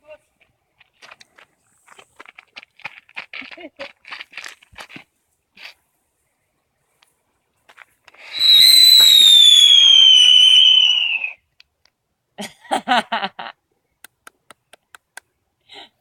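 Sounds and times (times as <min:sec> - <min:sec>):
firework whistle: 0:08.3 - 0:11.4.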